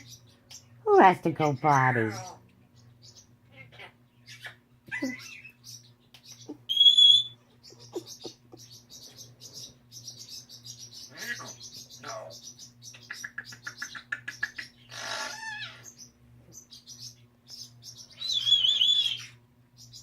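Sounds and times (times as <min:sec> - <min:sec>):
parrots chattering: 0:00.0 - 0:20.0
parrot whistle: 0:06.7 - 0:07.4, 0:18.2 - 0:19.4.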